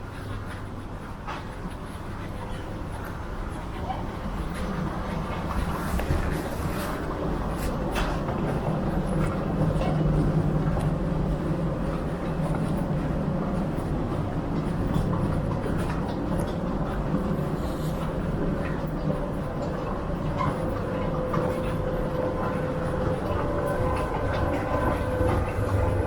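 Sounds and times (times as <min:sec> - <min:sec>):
train car rumble and hum: 0:00.0 - 0:26.0.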